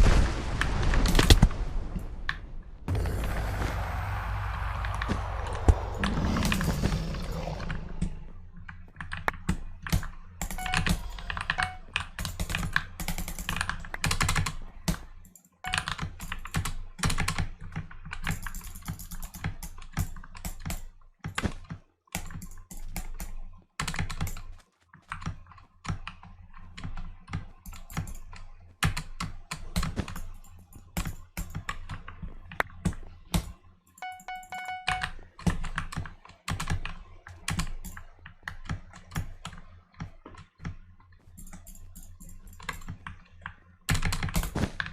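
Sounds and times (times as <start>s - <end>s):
mechanical keyboard typing: 9.0s - 21.6s, 34.0s - 40.5s, 43.9s - 44.6s
game chime: 10.5s - 11.9s, 34.0s - 35.2s.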